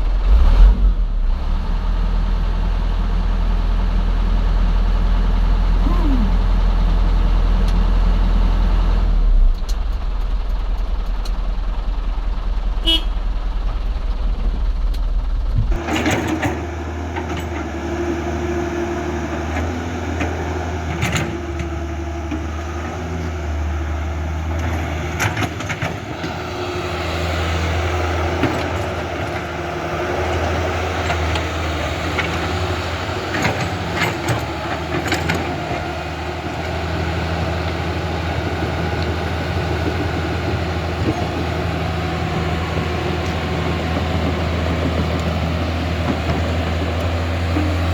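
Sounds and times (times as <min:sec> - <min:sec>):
low hum: 0:08.9 - 0:17.8.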